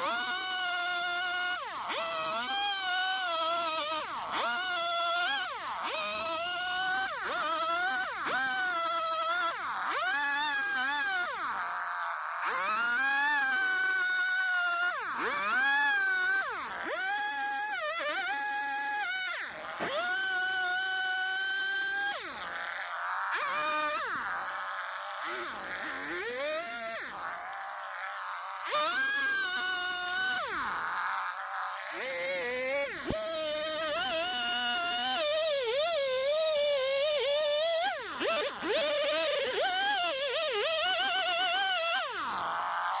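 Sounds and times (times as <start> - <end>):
chainsaw cutting into log: 0.0 - 43.0.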